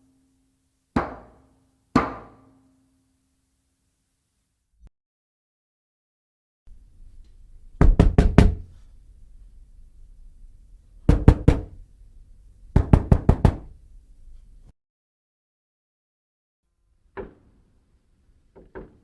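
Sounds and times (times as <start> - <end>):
knocking on a door: 6.7 - 10.0, 11.0 - 11.9, 12.7 - 14.6.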